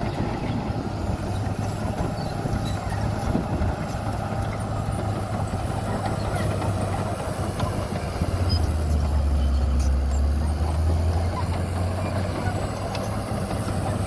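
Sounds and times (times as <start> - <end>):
construction machine diesel engine: 0.0 - 14.0.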